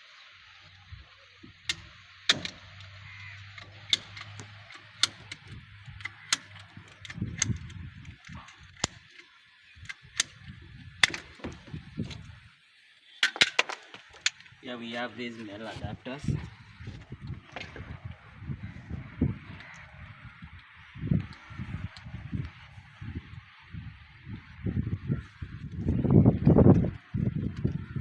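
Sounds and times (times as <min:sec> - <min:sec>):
sharp clicks and knocks: 0:01.4 - 0:12.3.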